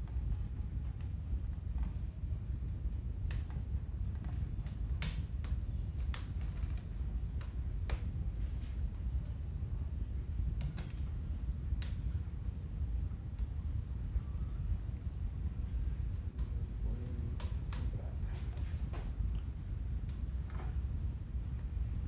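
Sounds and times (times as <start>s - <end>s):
fan parts clicking and tapping: 0.0s - 12.3s, 15.6s - 20.9s
low background rumble: 0.0s - 22.0s.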